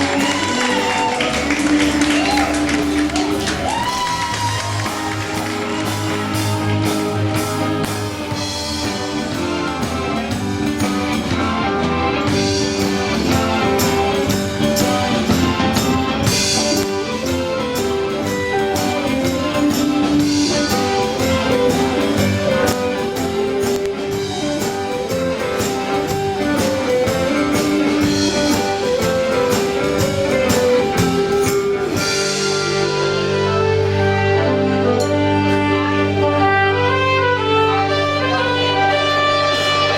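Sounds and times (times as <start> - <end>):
music with guitar and drums: 0.0 - 39.9.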